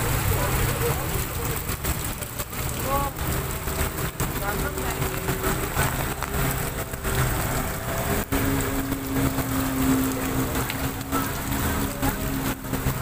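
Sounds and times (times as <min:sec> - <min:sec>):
rain and water noise: 0:00.0 - 0:13.0
vehicle engines running: 0:00.0 - 0:13.0.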